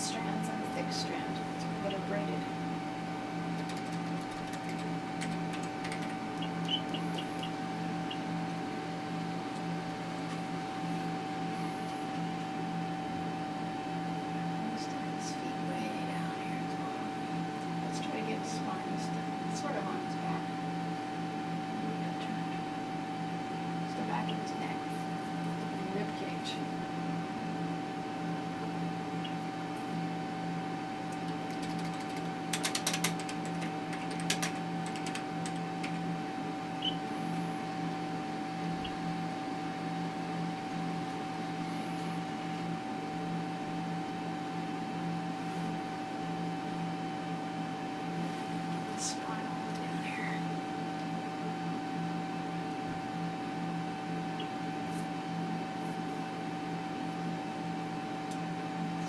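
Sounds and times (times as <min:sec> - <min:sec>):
electronic equipment hum: 0:00.0 - 0:59.0
sharp clicks: 0:03.6 - 0:08.2.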